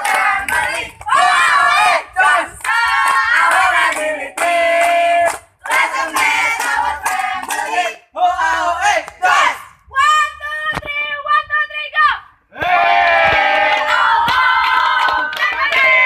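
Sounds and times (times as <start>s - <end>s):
students chanting a cheer: 0.0s - 4.8s, 5.7s - 9.7s, 12.5s - 16.0s.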